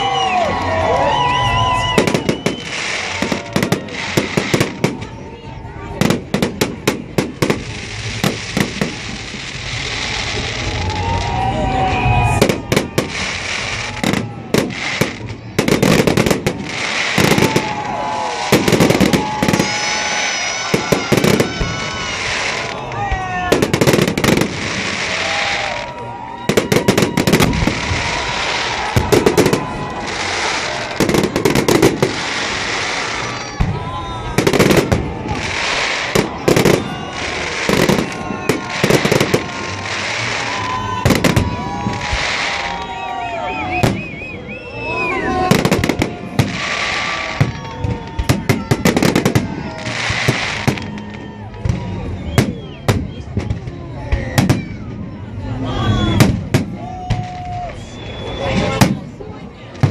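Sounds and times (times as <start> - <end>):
fireworks bangs and crackling: 0.0 - 59.9
thin whistling tones: 43.3 - 45.3, 52.1 - 53.4, 57.7 - 58.8.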